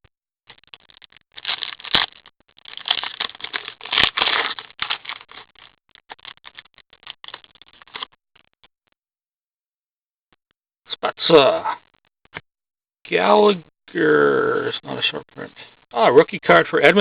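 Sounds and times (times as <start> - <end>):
trading cards rustling: 0.5 - 8.8.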